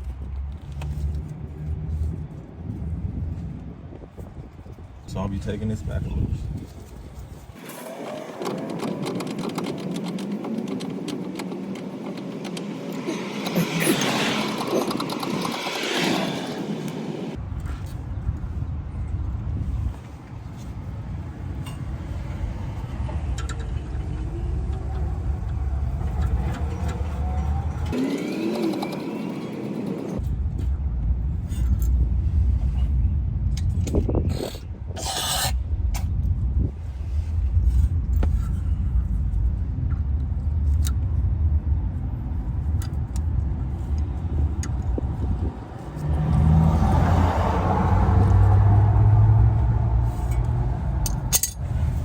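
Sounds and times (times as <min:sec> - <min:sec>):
car engine rumbling: 0:00.0 - 0:52.0
tool rattling rapid clicks: 0:08.0 - 0:16.0.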